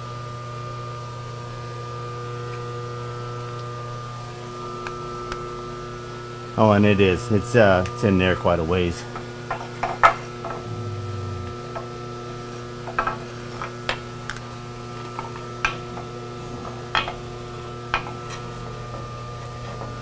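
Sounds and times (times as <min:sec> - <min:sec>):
steady machine hum: 0:10.6 - 0:12.0.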